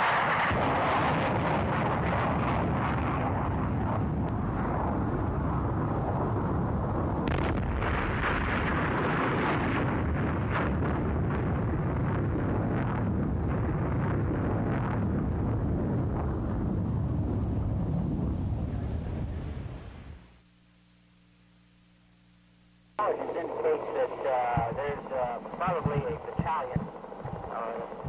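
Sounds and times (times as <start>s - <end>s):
jet engines roaring on takeoff: 23.0s - 28.0s.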